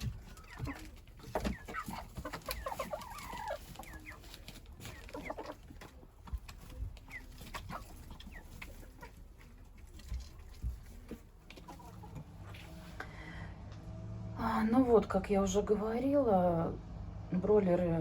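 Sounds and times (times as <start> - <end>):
chickens clucking: 0.0 - 13.8.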